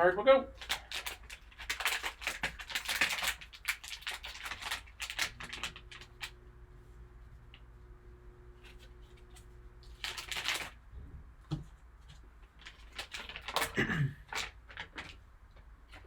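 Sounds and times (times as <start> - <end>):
faint steady hum: 0.0 - 16.0
wrapper crinkling and tearing: 0.6 - 6.4, 8.6 - 10.8, 12.6 - 15.2.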